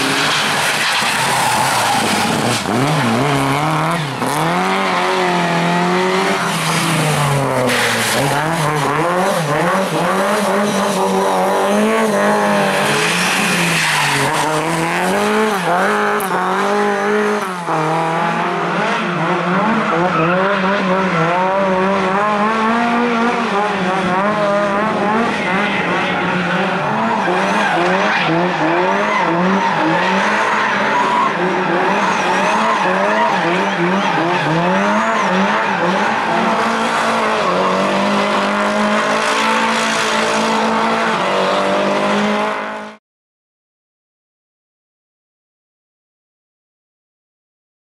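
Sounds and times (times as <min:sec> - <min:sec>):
rally car engine revving: 0:00.0 - 0:43.0.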